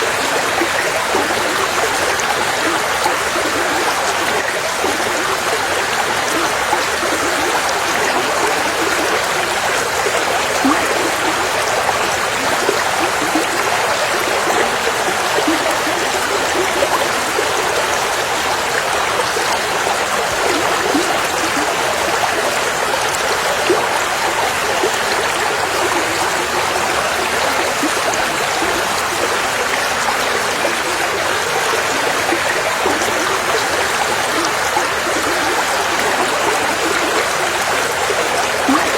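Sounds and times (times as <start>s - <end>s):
river water over rocks: 0.0s - 38.9s.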